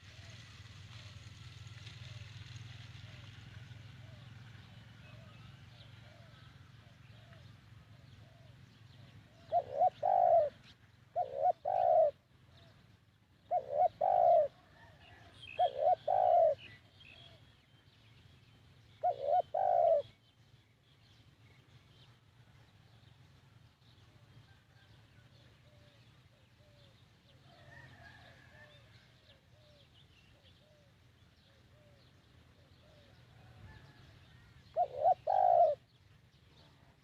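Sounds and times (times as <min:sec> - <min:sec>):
faint bird chirping: 0:03.9 - 0:37.0
dove cooing: 0:04.0 - 0:17.4, 0:19.0 - 0:20.2, 0:25.6 - 0:36.0.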